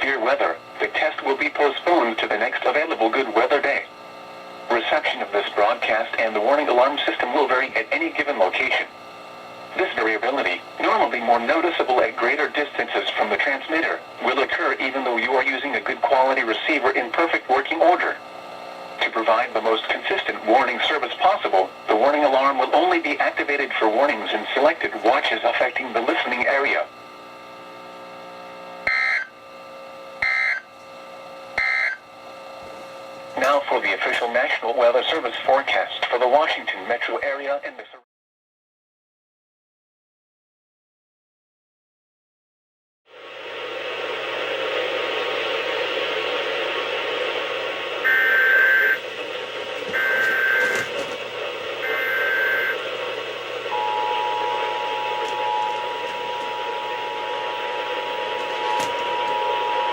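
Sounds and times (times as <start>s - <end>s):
steady hum: 0.0s - 38.0s, 43.1s - 59.9s
shrill data bursts: 48.0s - 49.0s, 49.9s - 51.0s, 51.8s - 52.8s, 53.7s - 59.9s
two-tone attention signal: 48.0s - 49.0s, 49.9s - 50.9s, 51.8s - 52.8s, 53.7s - 59.9s.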